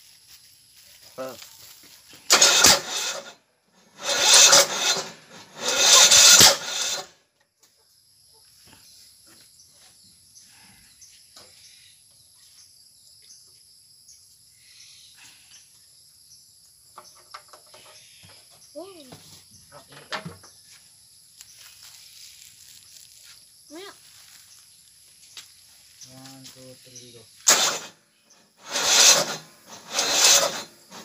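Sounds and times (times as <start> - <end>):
high insect trill: 0.0 - 3.2, 7.8 - 31.0
harsh scraping noise: 2.2 - 7.1, 28.5 - 31.0.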